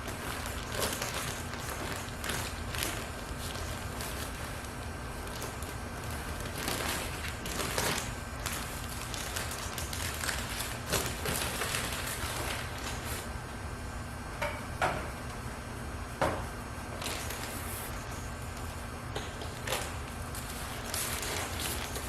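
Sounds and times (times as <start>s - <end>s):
rustling and scraping: 0.0s - 13.3s, 19.2s - 22.0s
steady low hum: 0.0s - 22.0s.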